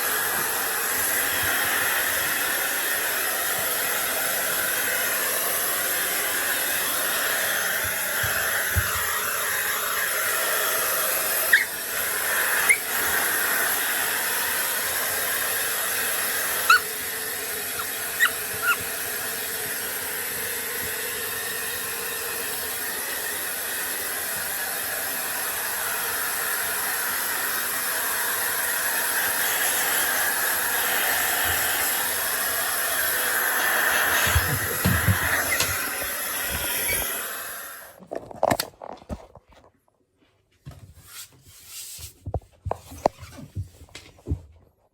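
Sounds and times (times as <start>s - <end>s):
hair dryer blowing with high whine: 0.0s - 38.6s
dog barking: 16.6s - 16.9s, 17.7s - 18.8s.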